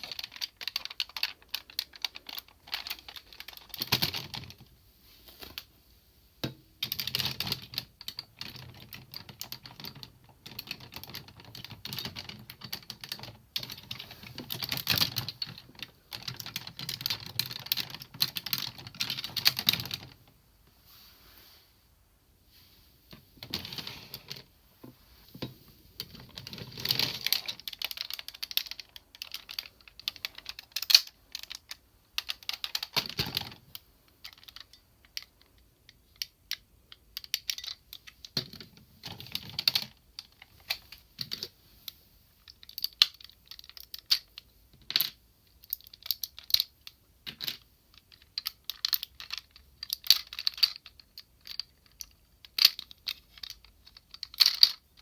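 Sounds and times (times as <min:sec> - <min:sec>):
plastic toy parts clicking: 0:00.0 - 0:04.6, 0:26.1 - 0:38.7, 0:42.5 - 0:46.7, 0:47.3 - 0:55.0.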